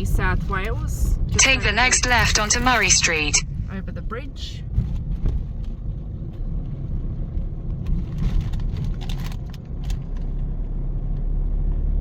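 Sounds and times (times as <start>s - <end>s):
road and engine rumble in a car: 0.0s - 12.0s.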